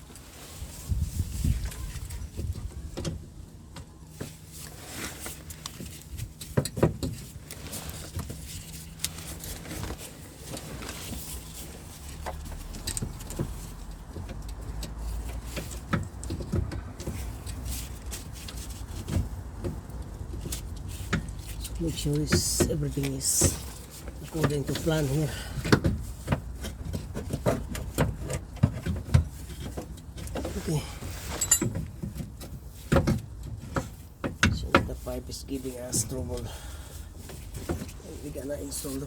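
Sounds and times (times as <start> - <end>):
tools and metal parts clicking: 31.2 - 32.0.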